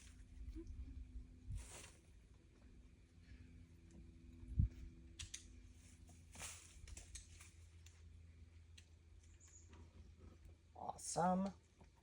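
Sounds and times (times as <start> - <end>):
low steady rumble: 0.0 - 12.0.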